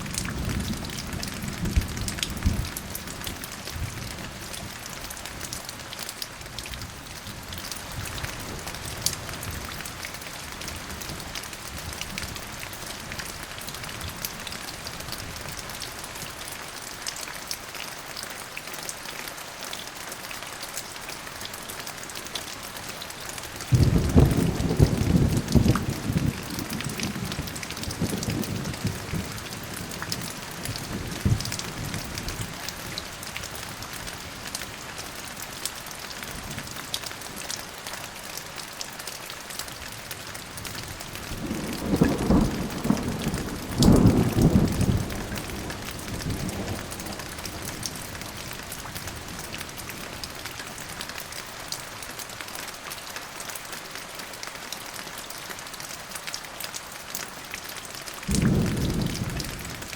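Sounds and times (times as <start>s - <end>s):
steady rain with dripping: 0.0s - 59.9s
rolling thunder: 23.7s - 29.8s, 41.4s - 47.7s, 58.3s - 59.9s.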